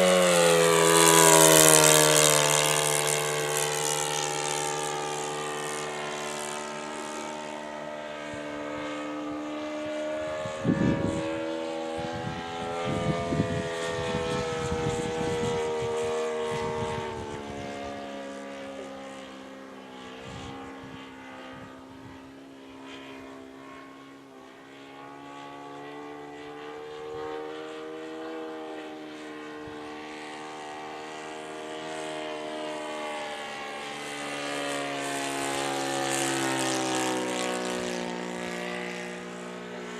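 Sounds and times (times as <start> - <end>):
model plane engine drone: 0.0 - 39.9.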